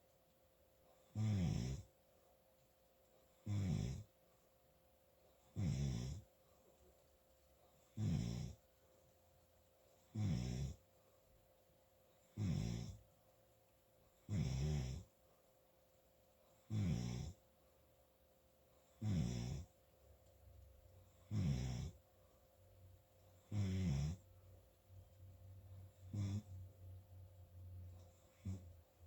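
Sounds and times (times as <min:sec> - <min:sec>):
loud snoring: 0:01.2 - 0:01.9, 0:03.4 - 0:04.0, 0:05.6 - 0:06.2, 0:08.0 - 0:08.6, 0:10.1 - 0:10.8, 0:12.4 - 0:13.0, 0:14.3 - 0:15.1, 0:16.7 - 0:17.4, 0:19.0 - 0:19.7, 0:21.2 - 0:22.0, 0:23.5 - 0:24.2, 0:26.0 - 0:26.7, 0:28.3 - 0:28.7.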